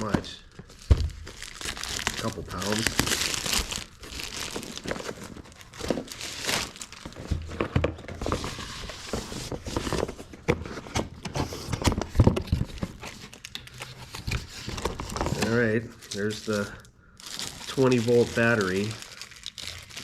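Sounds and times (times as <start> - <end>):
wrapping crinkling and rustling: 0.0 - 20.0.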